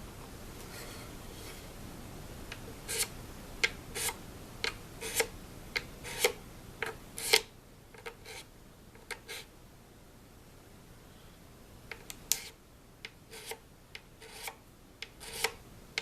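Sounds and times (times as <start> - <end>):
razor blade scraping wood: 2.9 - 3.1, 4.0 - 4.2, 5.0 - 5.3, 6.0 - 6.4, 7.2 - 7.4, 13.3 - 13.6, 14.2 - 14.6, 15.2 - 15.6.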